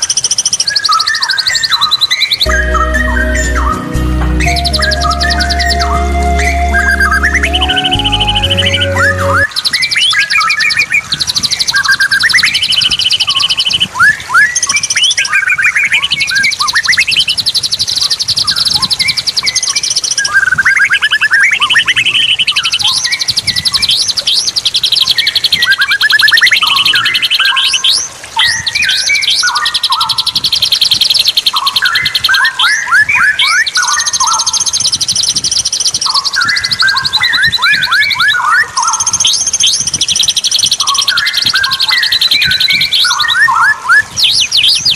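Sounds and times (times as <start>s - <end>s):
bird whistling song: 0.2s - 10.1s, 31.0s - 44.9s
high-pitched bird trills: 2.5s - 9.6s.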